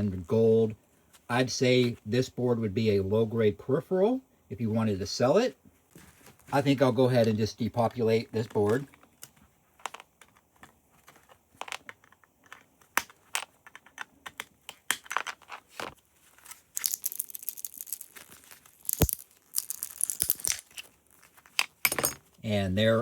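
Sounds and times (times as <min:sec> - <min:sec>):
crunching and scraping: 0:15.1 - 0:22.4
components clicking and snapping: 0:18.8 - 0:20.9.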